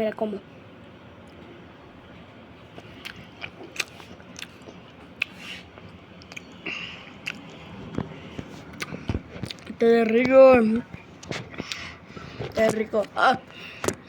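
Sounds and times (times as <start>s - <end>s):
person chewing: 2.8s - 10.2s, 10.9s - 12.4s
wet mouth clicks and smacks: 7.2s - 7.6s.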